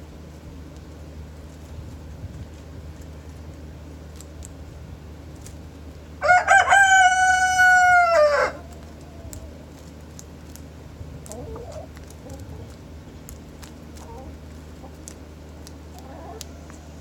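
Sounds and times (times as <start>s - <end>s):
rooster crowing: 6.2s - 8.7s
faint chicken call: 6.2s - 9.6s.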